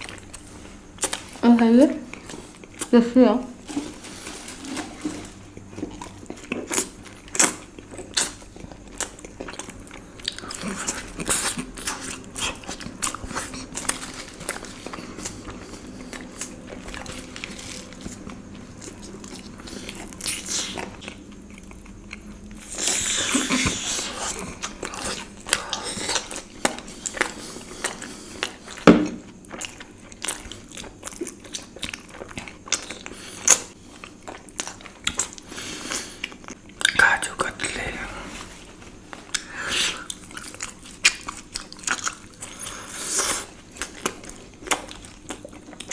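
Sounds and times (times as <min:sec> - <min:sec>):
biting and chewing: 0:39.2 - 0:45.9.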